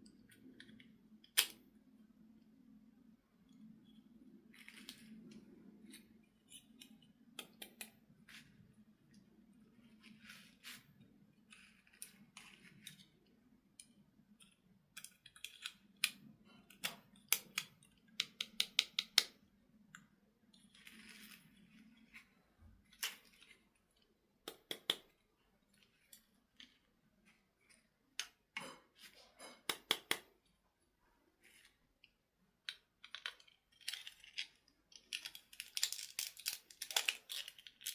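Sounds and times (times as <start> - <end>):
plastic toy parts clicking: 0.2 - 1.6, 13.8 - 21.1, 29.6 - 30.3, 32.0 - 37.9.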